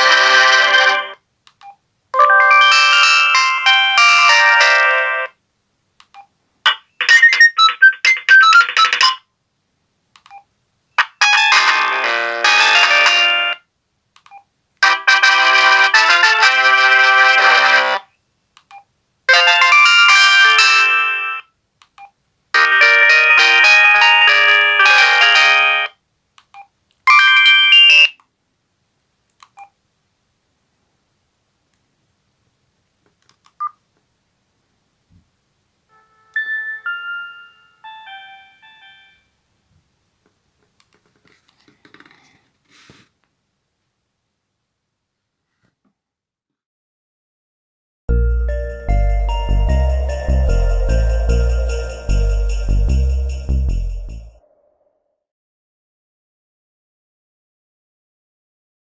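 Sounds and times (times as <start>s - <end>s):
phone melodic tone: 2.2s - 3.0s, 35.9s - 39.2s, 48.1s - 54.4s
polyphonic ringtone tune: 2.2s - 4.8s, 36.0s - 39.2s, 48.1s - 54.4s
short high beeping notes: 48.1s - 54.4s.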